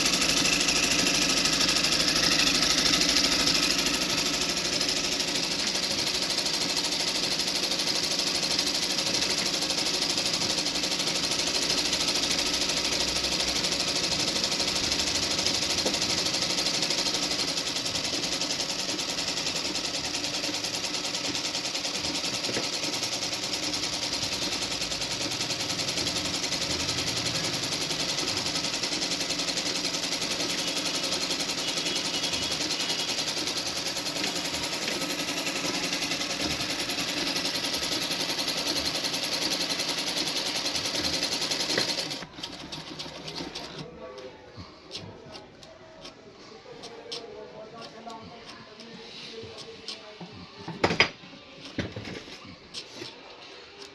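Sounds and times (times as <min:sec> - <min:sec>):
sewing machine running: 0:00.0 - 0:43.9.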